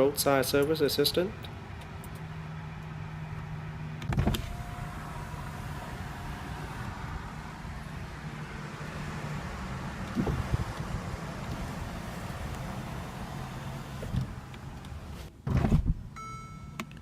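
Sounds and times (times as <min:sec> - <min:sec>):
car power window running: 0:04.0 - 0:16.0
power window clunk: 0:04.1 - 0:05.9.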